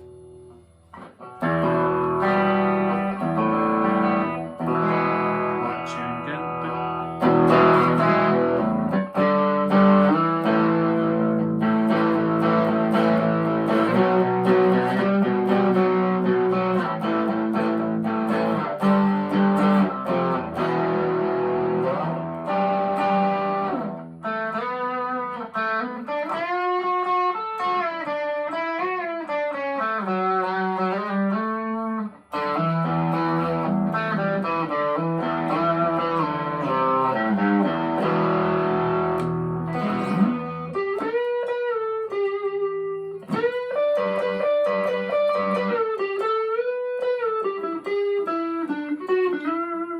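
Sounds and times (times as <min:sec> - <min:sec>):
electric guitar lead with bends: 0:00.0 - 0:49.9
overdriven electric guitar chords: 0:00.0 - 0:49.9.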